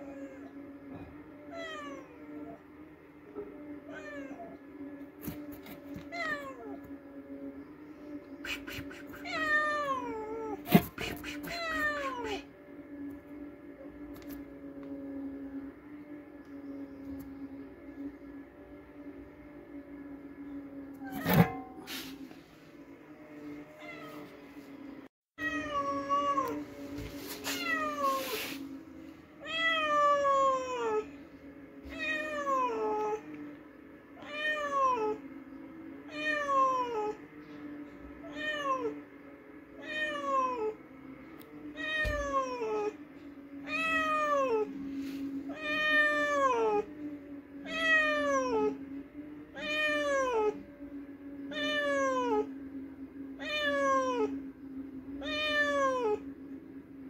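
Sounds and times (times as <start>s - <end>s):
cat meowing: 8.5s - 12.5s, 53.4s - 54.4s.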